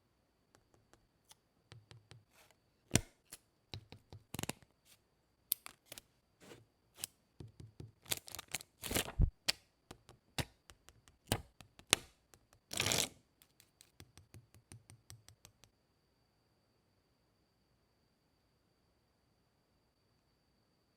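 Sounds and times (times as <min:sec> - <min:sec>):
paper rustling swipes: 0:08.8 - 0:09.3.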